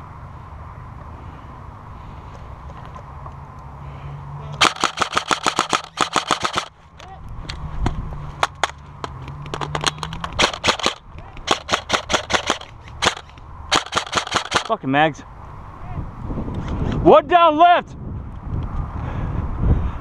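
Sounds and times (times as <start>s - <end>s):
airsoft guns firing: 4.6s - 6.7s, 9.9s - 14.8s.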